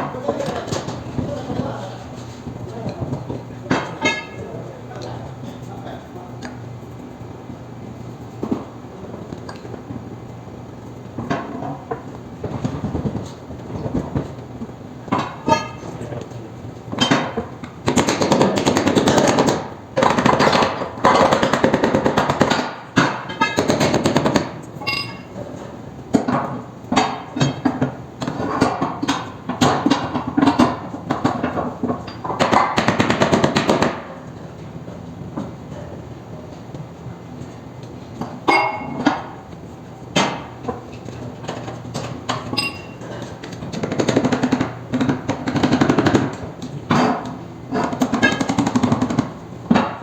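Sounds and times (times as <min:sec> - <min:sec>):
rapid metal-on-metal impacts: 0:03.7 - 0:04.5
ringing metal clinks: 0:04.0 - 0:04.5, 0:24.8 - 0:25.4, 0:38.5 - 0:39.0, 0:42.6 - 0:43.0.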